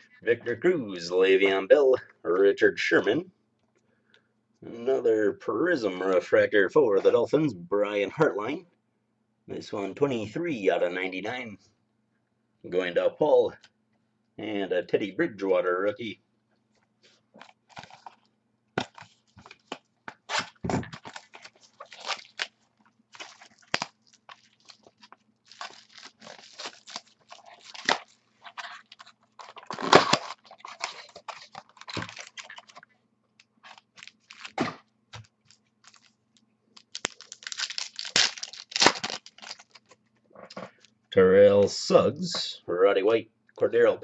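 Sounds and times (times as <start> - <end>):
faint steady hum: 0.0 - 44.0
wrappers tearing and crinkling: 17.4 - 18.3, 18.9 - 32.9, 33.6 - 36.2, 36.8 - 40.0.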